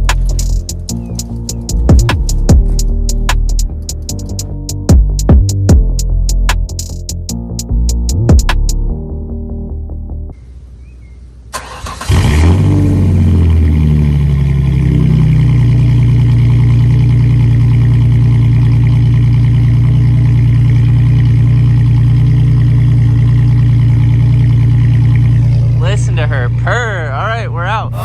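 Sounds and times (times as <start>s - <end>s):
engine starting and idling: 11.5s - 14.6s.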